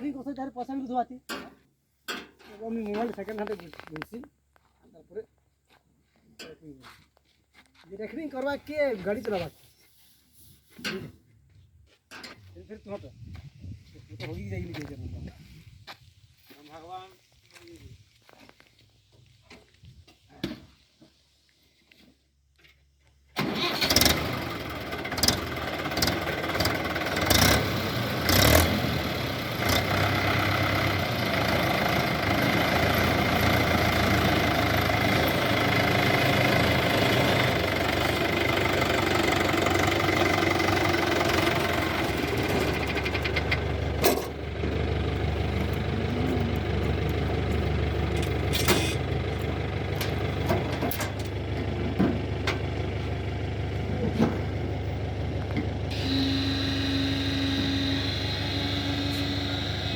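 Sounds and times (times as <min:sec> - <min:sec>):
heavy diesel engine running: 0:23.4 - 0:59.9.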